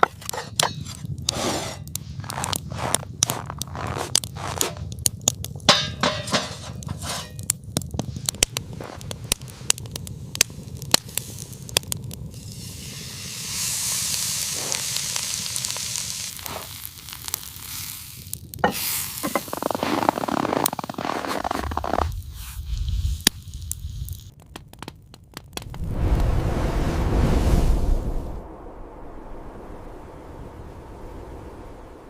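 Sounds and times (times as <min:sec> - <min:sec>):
irregular crackling: 0:00.0 - 0:26.5
steady high hiss: 0:12.3 - 0:20.3.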